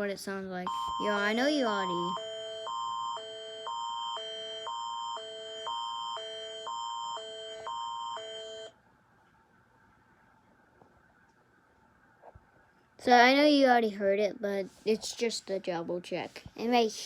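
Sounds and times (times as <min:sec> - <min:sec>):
alternating electronic chords: 0:00.7 - 0:08.7
steady high tone: 0:00.7 - 0:08.7.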